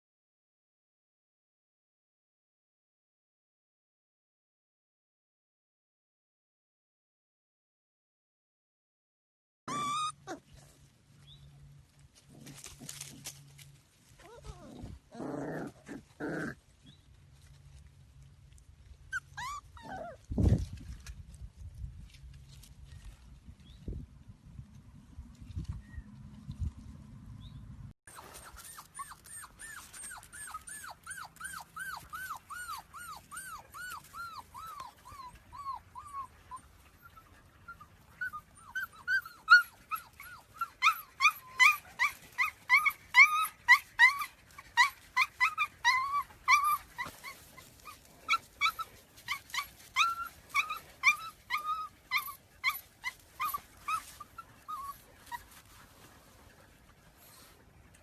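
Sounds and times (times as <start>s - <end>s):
dog whining: 9.7s - 10.5s, 14.2s - 16.5s, 19.1s - 20.2s, 28.1s - 55.4s.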